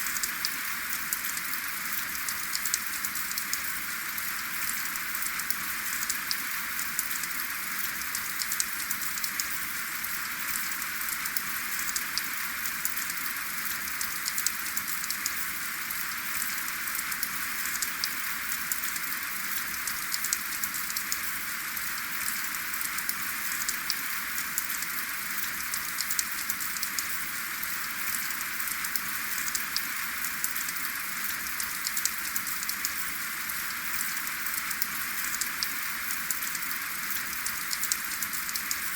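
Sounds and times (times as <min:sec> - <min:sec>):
raindrops ticking nearby: 0:00.1 - 0:03.7, 0:19.7 - 0:21.3, 0:22.0 - 0:27.3, 0:28.0 - 0:38.9.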